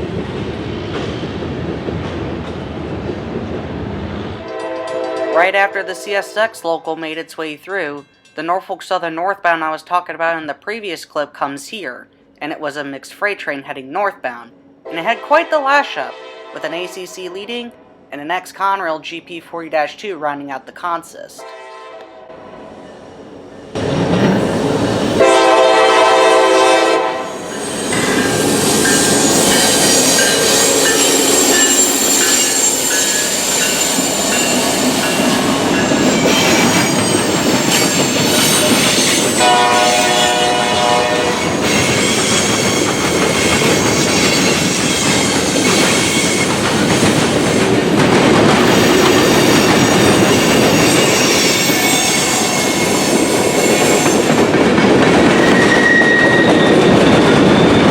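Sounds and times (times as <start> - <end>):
freight train passing: 0.0 - 8.6, 14.6 - 18.3, 21.2 - 57.9
locomotive horn: 4.4 - 6.4, 14.9 - 17.3, 21.4 - 22.7, 25.2 - 27.4, 39.4 - 41.6
wheel squeal: 27.4 - 39.5, 48.8 - 54.3, 55.4 - 57.9.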